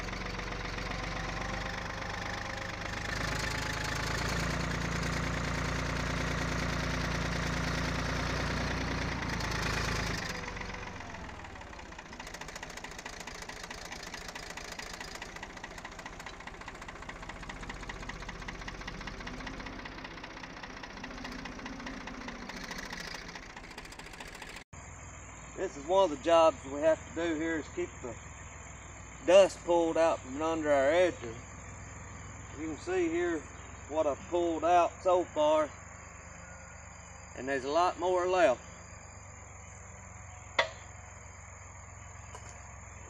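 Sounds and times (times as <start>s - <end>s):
engine running with rapid ticking: 0.0s - 25.6s, 38.8s - 43.0s.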